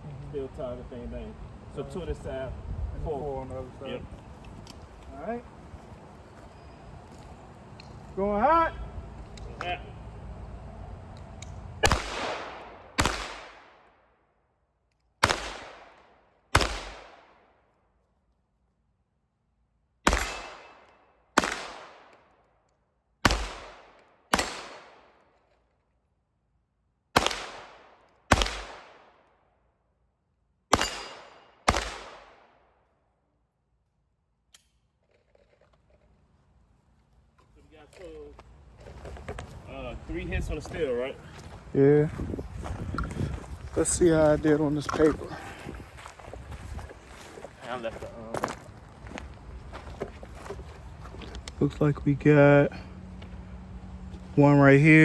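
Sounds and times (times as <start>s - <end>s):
handgun shots: 11.8s - 13.7s, 15.2s - 17.3s, 20.1s - 22.2s, 23.2s - 25.0s, 27.2s - 29.0s, 30.7s - 32.5s.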